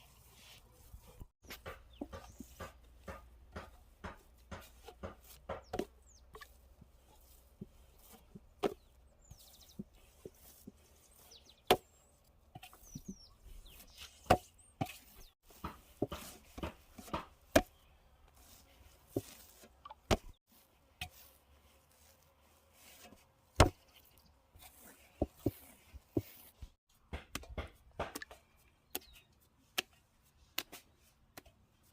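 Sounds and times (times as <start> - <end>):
food preparation knocks and clicks: 1.4 - 6.5, 14.3 - 17.8, 26.2 - 29.1.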